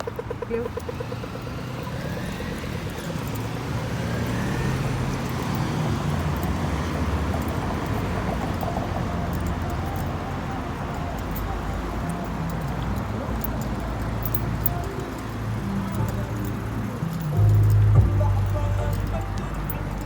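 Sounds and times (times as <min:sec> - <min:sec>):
traffic rumble: 0:00.0 - 0:20.0.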